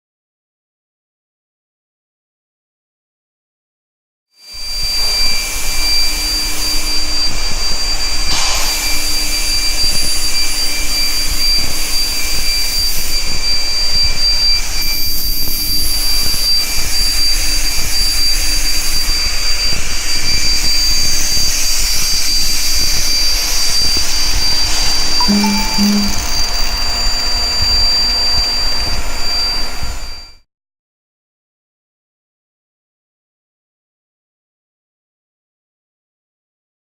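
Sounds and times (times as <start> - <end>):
high-pitched whine: 4.5 - 27.2
low hum: 25.2 - 26.4.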